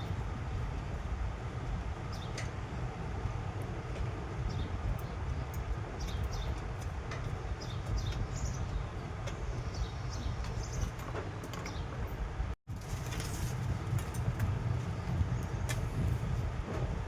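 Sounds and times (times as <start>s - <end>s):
low background rumble: 0.0s - 11.0s.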